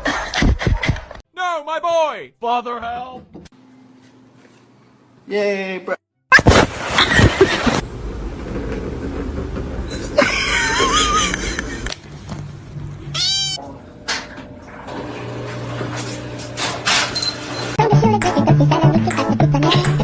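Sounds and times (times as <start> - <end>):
cat meowing: 13.1 - 13.6.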